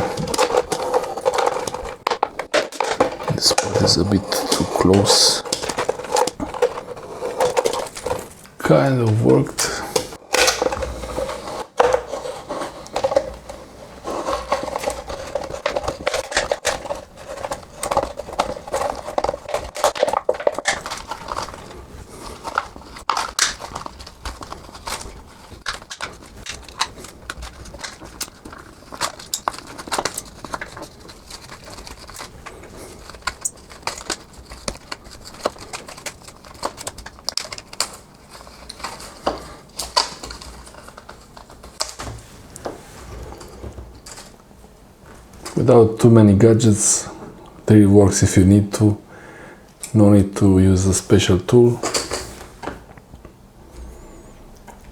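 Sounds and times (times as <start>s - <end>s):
plastic bottle crinkling: 0.0s - 42.7s
knife scraping plastic: 0.0s - 44.4s.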